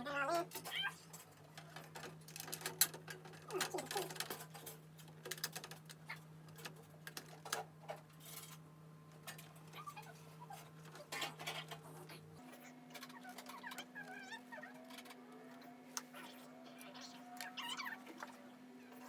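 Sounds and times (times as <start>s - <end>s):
computer hardware clicks and rattles: 0.5s - 8.6s.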